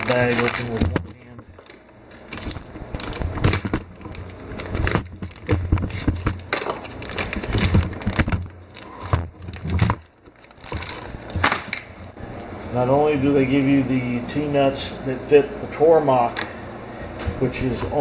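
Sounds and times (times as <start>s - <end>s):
plastic bag crinkling: 0.0s - 12.2s.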